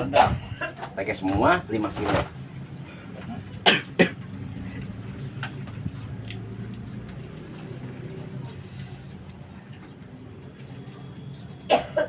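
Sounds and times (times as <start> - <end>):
person coughing: 0.1 - 0.8, 3.6 - 4.2, 11.7 - 12.0.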